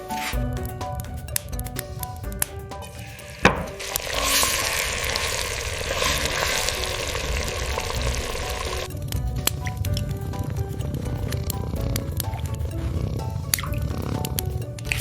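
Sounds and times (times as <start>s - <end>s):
soft background music: 0.0s - 15.0s
food sizzling in a hot pan: 3.9s - 8.9s.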